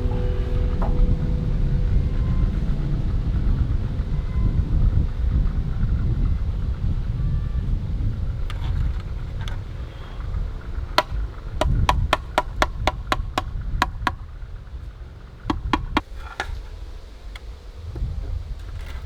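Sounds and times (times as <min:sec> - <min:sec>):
tool tapping bricks: 0:11.0 - 0:14.2, 0:15.5 - 0:16.6.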